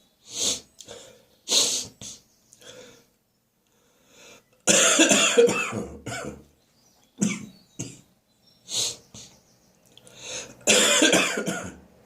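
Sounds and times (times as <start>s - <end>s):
person sniffing congested nose: 0.2s - 3.0s, 8.7s - 9.3s.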